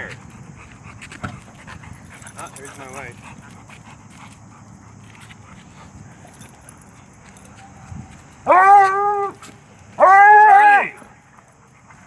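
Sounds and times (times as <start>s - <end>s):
faint scattered outdoor sounds: 0.0s - 12.0s
person shouting loudly: 8.5s - 9.4s, 10.0s - 11.0s.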